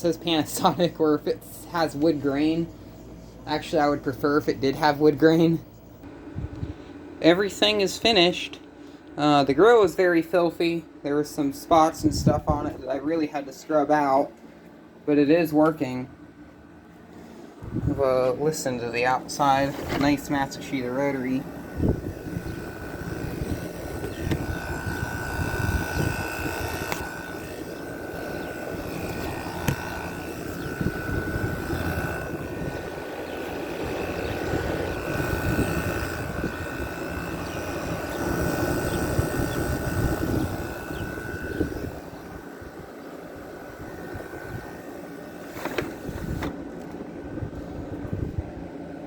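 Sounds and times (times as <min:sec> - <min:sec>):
air conditioner compressor rumble: 0:00.0 - 0:49.0
air conditioner fan whine: 0:00.0 - 0:49.0.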